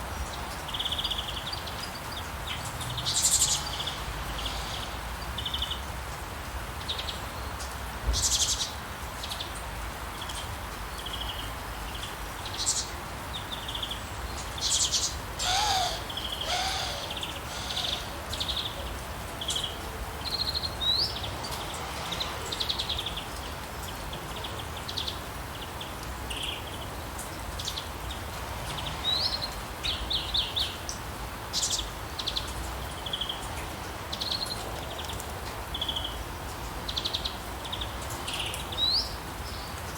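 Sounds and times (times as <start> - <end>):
rain falling: 0.0 - 39.9
birds chirping and singing: 14.7 - 18.8.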